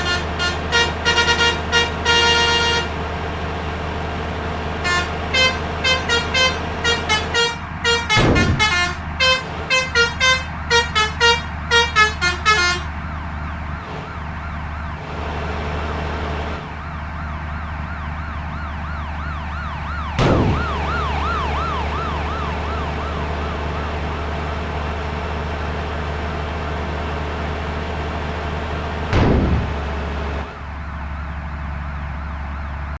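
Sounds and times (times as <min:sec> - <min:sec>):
musical bus horn tooting: 0:00.0 - 0:03.0, 0:04.8 - 0:13.0
low engine hum: 0:00.0 - 0:33.0
warbling siren-like tone: 0:13.1 - 0:15.1, 0:16.6 - 0:24.2.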